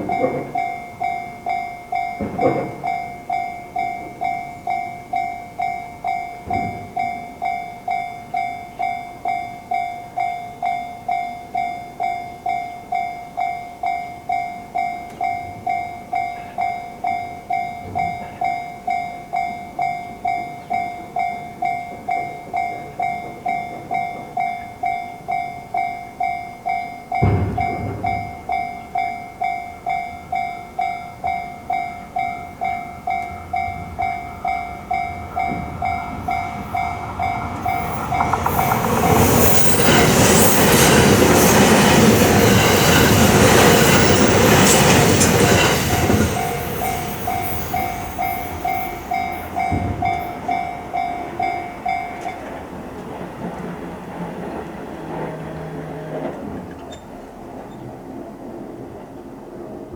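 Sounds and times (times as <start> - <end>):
railroad crossing bell ringing: 0.0 - 57.9
passing train rumble: 0.0 - 59.9
loud thud: 27.2 - 28.5.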